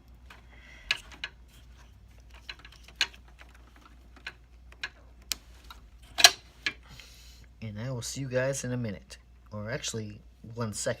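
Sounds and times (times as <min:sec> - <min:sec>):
metal and plastic parts clicking: 0:00.0 - 0:06.8.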